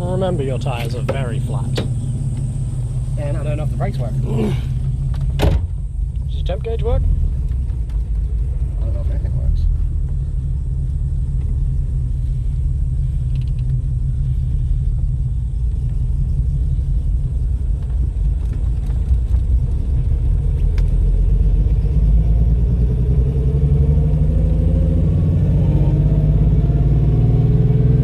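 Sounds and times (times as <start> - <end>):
car engine rumbling: 0.0 - 28.0.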